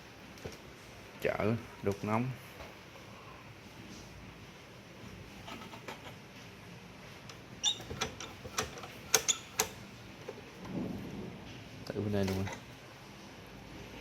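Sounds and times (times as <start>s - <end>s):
scratching of small parts: 5.4s - 6.2s, 7.3s - 10.5s.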